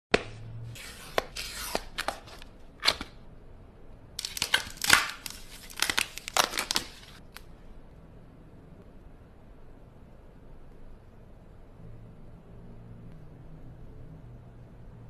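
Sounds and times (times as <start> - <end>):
packaging tearing: 0.8 - 3.2, 4.2 - 7.4.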